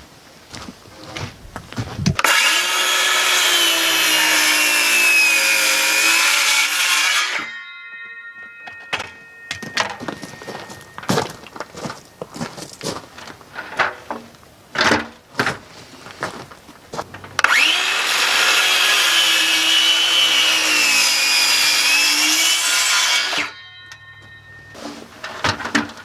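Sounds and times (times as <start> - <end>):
power saw cutting wood: 2.2 - 7.6, 17.4 - 23.6.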